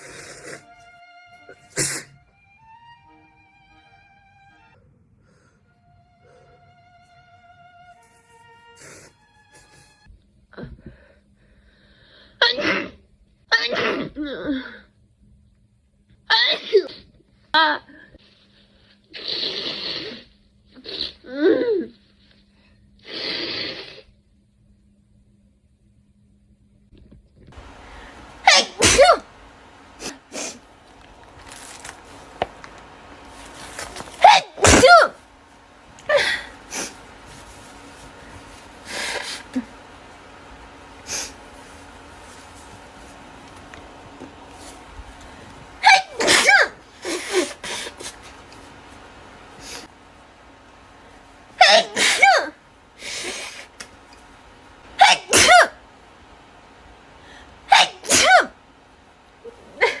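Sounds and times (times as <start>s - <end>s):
breathy nasal bursts: 0.0s - 0.8s, 1.7s - 2.2s, 19.1s - 21.1s, 23.0s - 24.1s, 38.8s - 39.6s
woman sneezing: 1.7s - 2.2s, 12.4s - 14.7s, 28.4s - 29.3s, 34.1s - 35.2s, 45.8s - 48.2s, 51.6s - 52.6s, 55.0s - 55.8s, 57.7s - 58.6s
breathy noise: 35.9s - 43.3s.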